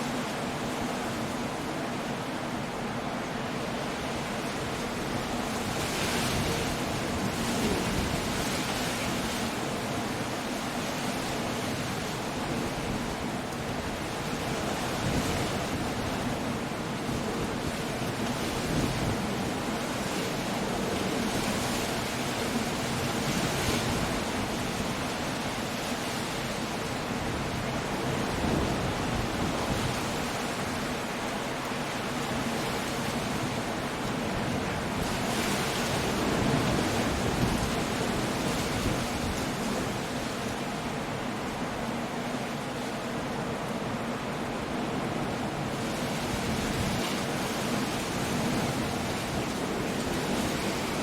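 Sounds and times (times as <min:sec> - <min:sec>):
rain: 0:00.0 - 0:51.0
waves breaking on shore: 0:00.0 - 0:51.0
wind: 0:00.0 - 0:51.0.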